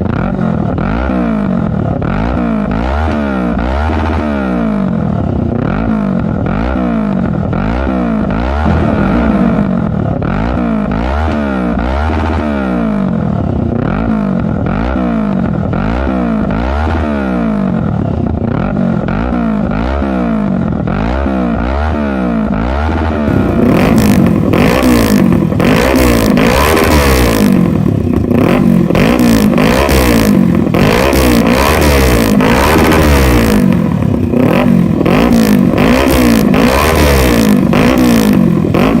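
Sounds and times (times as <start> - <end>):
motorcycle engine revving: 0.0 - 39.0.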